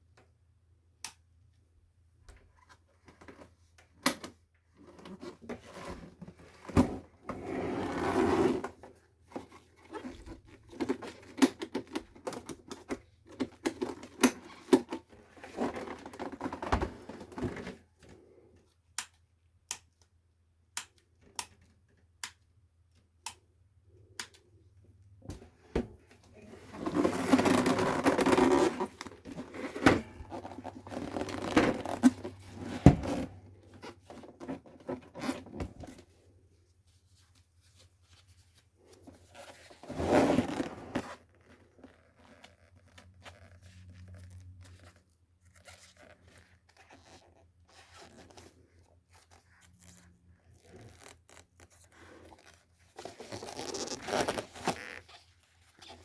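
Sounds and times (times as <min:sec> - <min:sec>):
scraping and rattling plastic: 0:26.6 - 0:35.8.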